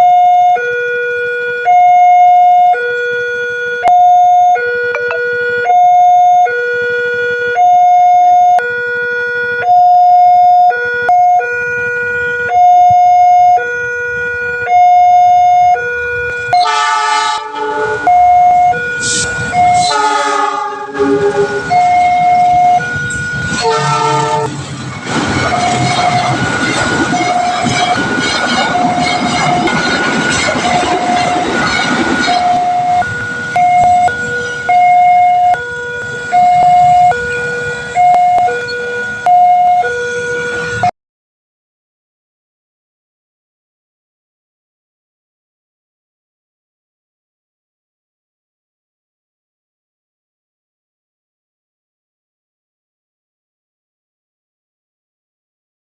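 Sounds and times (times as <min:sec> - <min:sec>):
level crossing alarm: 0:00.0 - 0:24.5, 0:25.5 - 0:40.9
train horn blasts: 0:16.4 - 0:24.6, 0:30.9 - 0:40.9
train wheels rumbling on rails: 0:17.5 - 0:39.2.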